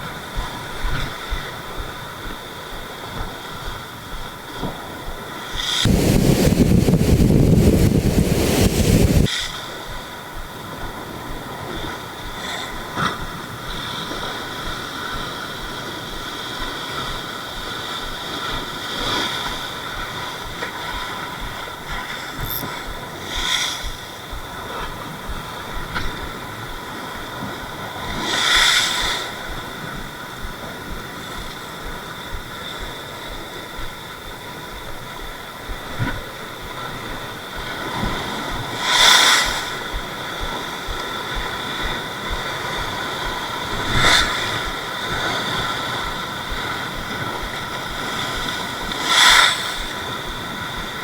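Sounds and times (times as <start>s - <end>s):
sea surf: 0.0s - 51.0s
wind on microphone: 0.0s - 51.0s
sharp click: 22.2s - 23.9s
high-pitched whine: 22.2s - 24.4s.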